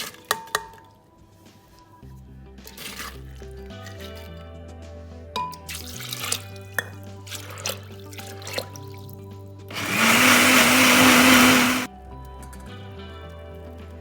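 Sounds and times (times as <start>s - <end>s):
background music: 0.0s - 14.0s
electric blender motor running: 9.7s - 11.9s.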